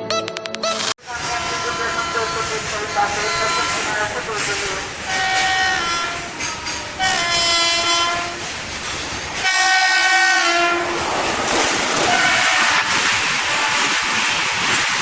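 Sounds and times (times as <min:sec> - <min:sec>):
train horn blasts: 0:00.6 - 0:04.1, 0:05.1 - 0:08.5, 0:09.4 - 0:11.0, 0:12.0 - 0:14.0
train passing clatter: 0:01.0 - 0:15.0.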